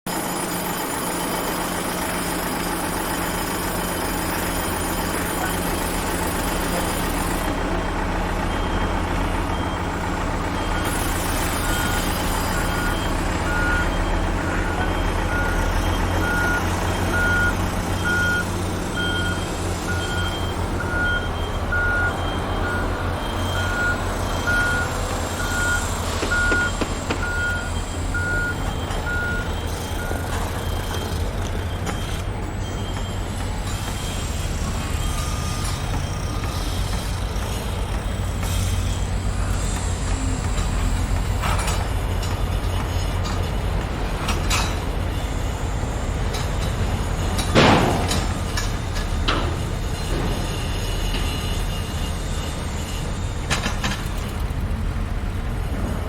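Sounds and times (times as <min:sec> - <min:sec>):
reversing alarm beeping: 0:00.1 - 0:54.3
diesel engine rumbling: 0:00.1 - 0:56.0.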